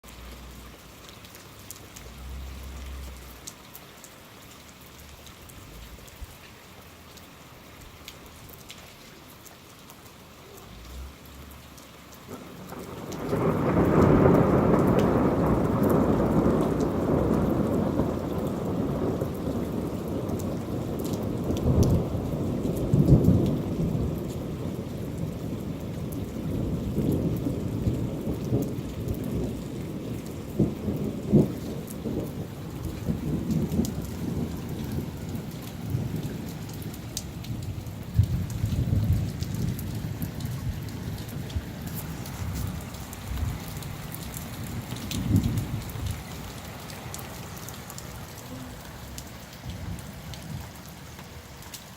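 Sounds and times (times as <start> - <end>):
steady falling rain: 0.0 - 51.9
thunder rumbling and cracking: 12.3 - 51.0.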